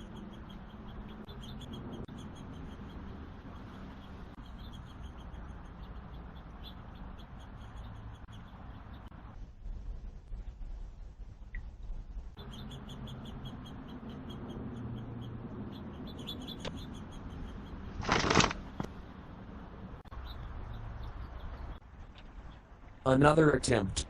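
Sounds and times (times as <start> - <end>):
loud rustling burst: 18.0 - 18.9.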